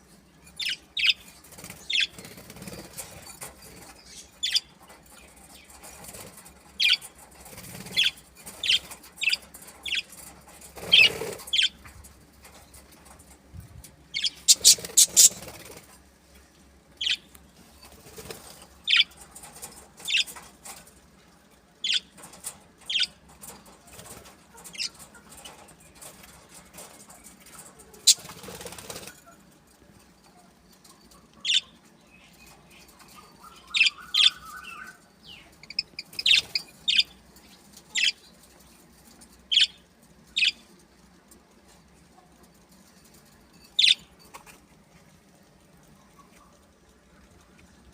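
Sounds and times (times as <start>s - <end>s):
birds flapping wings: 1.5s - 4.0s, 7.4s - 9.0s, 10.7s - 11.6s, 14.5s - 16.0s, 17.9s - 18.7s, 27.6s - 29.2s
high-pitched bird chirps: 14.2s - 15.4s, 33.1s - 37.1s.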